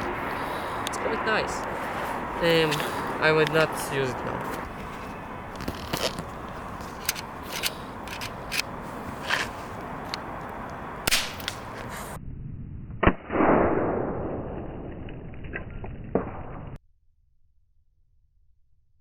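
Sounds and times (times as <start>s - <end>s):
rushing noise: 0.0s - 5.6s
plastic pistol shot snap: 11.1s - 11.6s.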